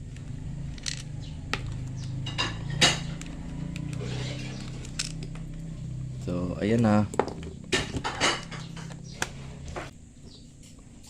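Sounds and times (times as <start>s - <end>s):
small parts clicking and clinking: 0.0s - 5.7s
steady low hum: 0.0s - 11.0s.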